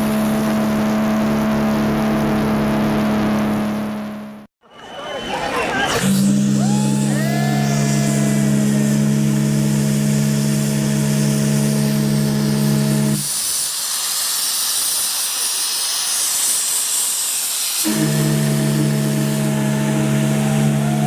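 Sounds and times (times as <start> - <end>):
ship's steam whistle: 6.0 - 13.3, 17.8 - 21.0
steam hissing: 6.0 - 21.0.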